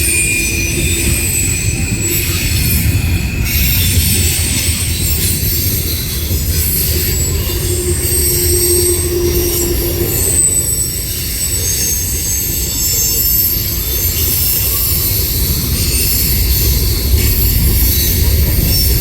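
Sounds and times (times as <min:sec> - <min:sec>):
high-pitched wheel squealing: 0:00.0 - 0:19.0
train wheels rumbling on rail: 0:00.0 - 0:19.0.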